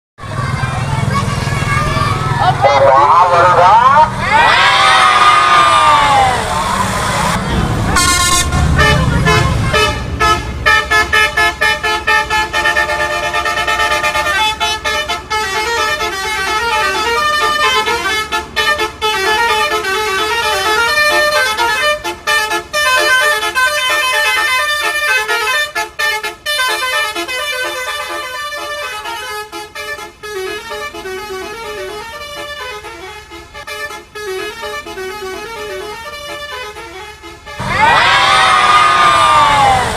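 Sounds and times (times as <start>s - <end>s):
multi-tone musical bus horn: 0.3s - 39.9s.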